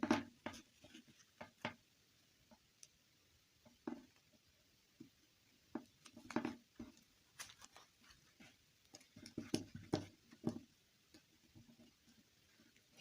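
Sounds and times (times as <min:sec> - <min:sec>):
small objects tapping and clicking: 0:05.0 - 0:07.8, 0:08.4 - 0:12.0.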